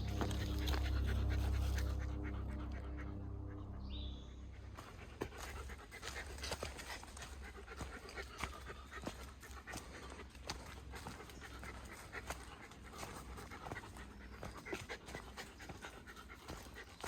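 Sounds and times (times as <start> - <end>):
footsteps crunching on rocks: 0.0 - 1.1
heavy panting breaths: 0.0 - 17.0
low droning hum: 0.0 - 17.0.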